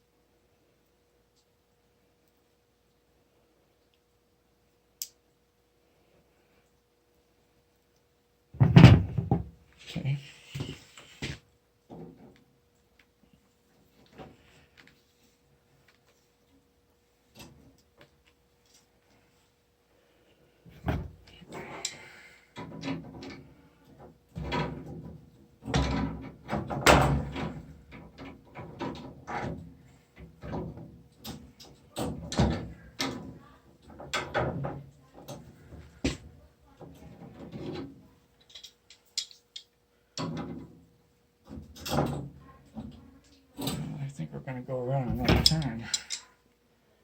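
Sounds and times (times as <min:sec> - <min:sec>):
wrenches clanking on brass fittings: 0:38.4 - 0:39.6, 0:45.1 - 0:46.3.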